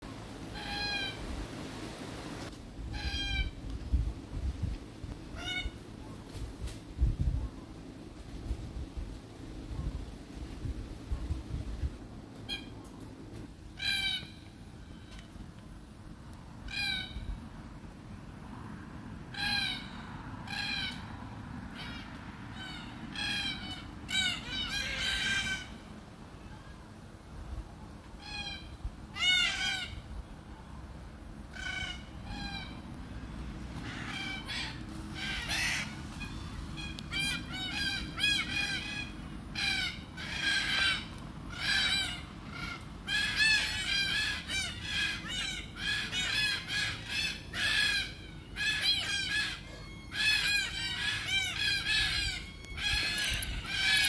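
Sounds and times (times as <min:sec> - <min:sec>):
cockatoo harsh calls: 0:00.5 - 0:01.2, 0:02.9 - 0:03.6, 0:05.3 - 0:06.2, 0:13.8 - 0:15.2, 0:19.3 - 0:21.0, 0:21.7 - 0:26.9, 0:28.2 - 0:30.1, 0:31.4 - 0:32.9, 0:33.8 - 0:54.0.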